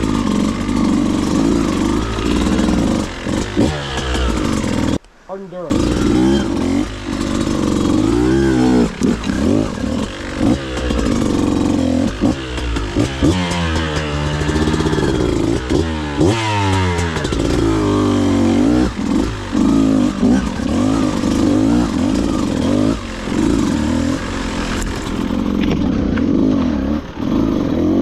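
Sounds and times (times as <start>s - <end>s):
motorbike engine revving: 0.0s - 5.0s, 5.7s - 28.0s
knocks and clatter: 9.0s - 15.9s.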